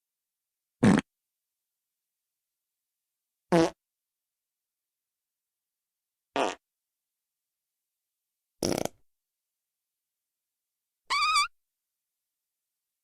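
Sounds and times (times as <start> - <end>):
fart sound effects: 0.8 - 1.1, 3.5 - 3.8, 6.4 - 6.6, 8.6 - 9.0.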